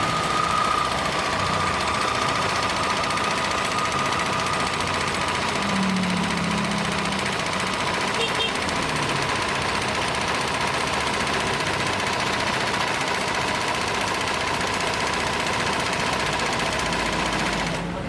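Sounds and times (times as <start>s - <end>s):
sewing machine stitching: 0.0s - 18.0s.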